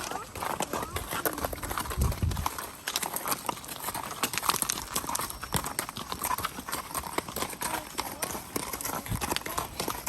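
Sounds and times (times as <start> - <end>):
horse hooves clip-clopping: 0.0 - 10.0.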